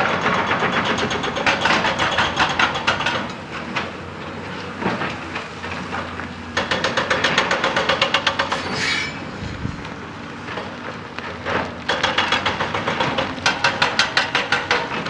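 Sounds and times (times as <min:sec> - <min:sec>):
hydraulic rock breaker hammering: 0:00.0 - 0:15.0.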